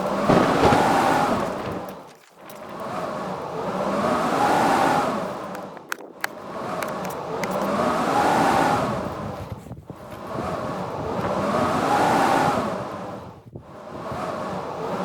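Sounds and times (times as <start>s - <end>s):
blizzard wind gusting with howl: 0.0s - 15.0s.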